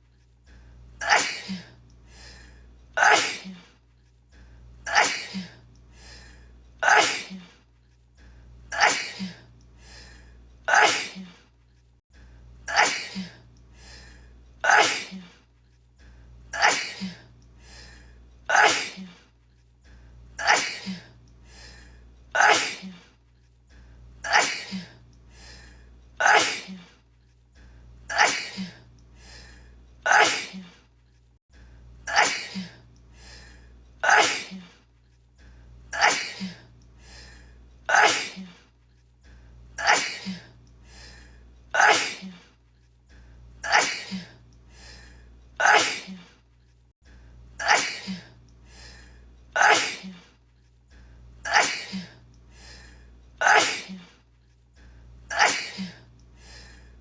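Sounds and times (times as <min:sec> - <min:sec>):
woman sneezing: 0:03.0 - 0:03.6, 0:06.8 - 0:07.5, 0:08.7 - 0:09.4, 0:10.7 - 0:11.3, 0:14.6 - 0:15.3, 0:18.5 - 0:19.1, 0:22.4 - 0:23.0, 0:26.2 - 0:26.8, 0:30.1 - 0:30.7, 0:34.0 - 0:34.8, 0:37.9 - 0:38.6, 0:41.8 - 0:42.4, 0:45.6 - 0:46.3, 0:47.6 - 0:48.2, 0:49.6 - 0:50.2, 0:51.5 - 0:52.1, 0:53.4 - 0:54.1, 0:55.3 - 0:56.0.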